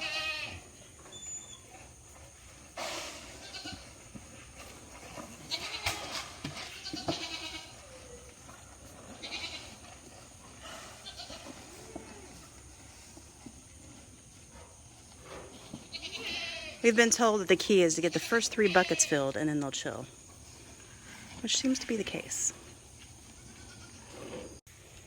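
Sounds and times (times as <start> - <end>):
goats bleating: 0.0 - 0.6, 3.4 - 4.0, 5.4 - 8.0, 9.1 - 9.9, 10.6 - 12.3, 15.8 - 16.8, 18.2 - 19.3, 23.3 - 24.1.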